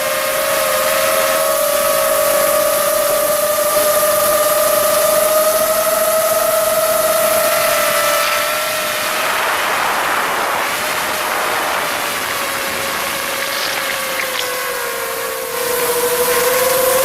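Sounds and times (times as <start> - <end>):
drone propellers whining: 0.0 - 17.0.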